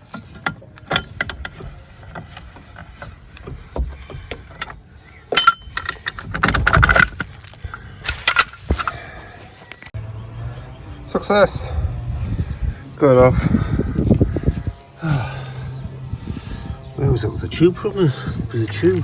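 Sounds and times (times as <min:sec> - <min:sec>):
hand tools clicking and scraping: 0:00.0 - 0:10.0, 0:18.5 - 0:19.0.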